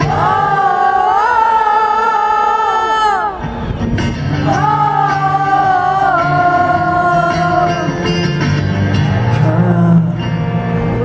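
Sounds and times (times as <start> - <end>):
acoustic guitar playing: 3.3 - 11.0.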